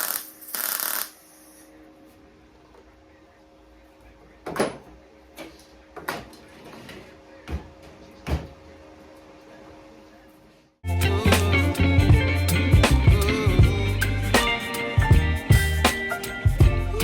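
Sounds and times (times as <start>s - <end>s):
music: 10.8s - 17.0s.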